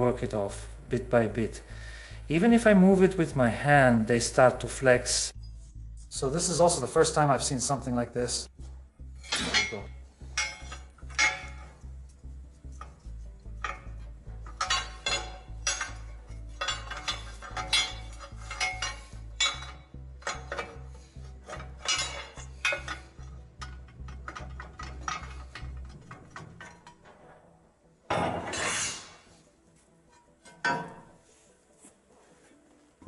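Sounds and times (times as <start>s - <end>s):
low pulsing music beat: 0.5s - 26.4s
metal parts clinking: 9.2s - 27.1s.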